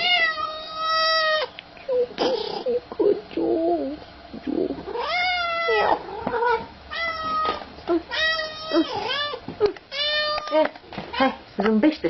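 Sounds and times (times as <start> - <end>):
cat meowing: 0.0 - 1.5, 4.9 - 10.6.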